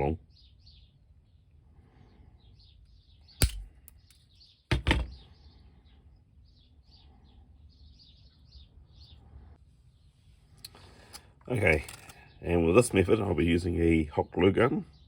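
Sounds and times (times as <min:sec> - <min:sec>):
small birds chirping faintly: 0:00.0 - 0:15.0
cutters snapping pin: 0:03.4 - 0:03.7.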